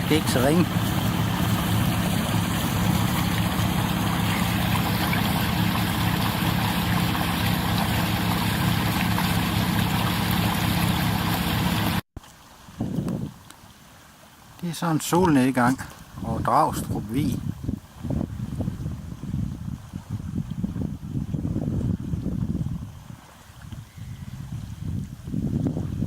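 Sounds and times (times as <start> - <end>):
boat engine droning: 0.0 - 12.0.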